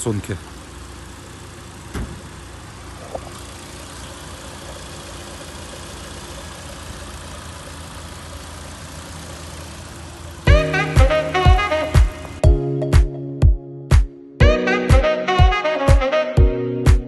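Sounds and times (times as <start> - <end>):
car engine idling: 0.0 - 12.4
music: 10.5 - 17.0.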